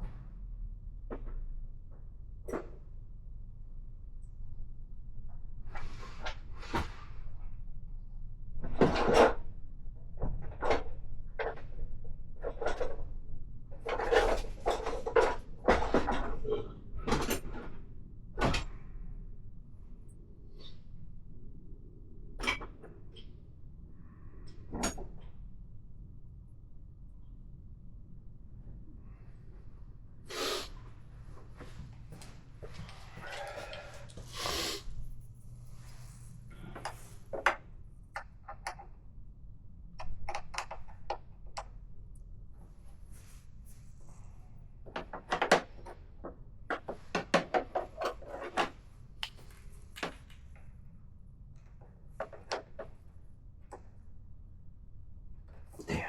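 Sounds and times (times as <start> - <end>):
steady low hum: 13.2 - 40.0.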